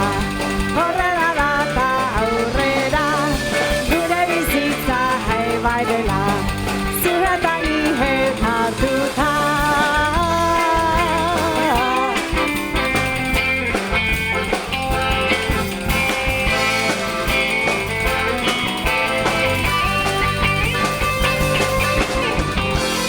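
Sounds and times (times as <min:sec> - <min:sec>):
person singing: 0:00.0 - 0:13.1
accordion band music: 0:00.0 - 0:23.0.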